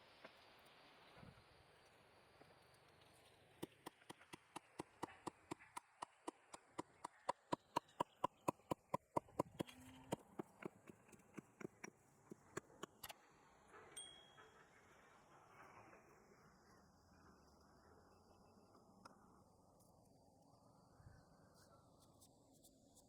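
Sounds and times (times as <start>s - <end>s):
fast series of sharp knocks: 3.6s - 13.1s.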